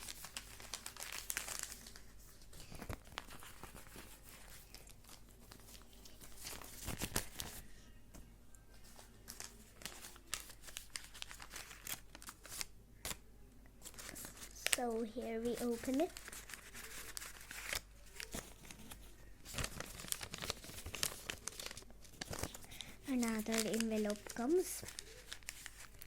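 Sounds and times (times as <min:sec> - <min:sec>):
paper crinkling and rustling: 0:00.0 - 0:13.2, 0:13.8 - 0:26.0
paper tearing: 0:15.5 - 0:26.0.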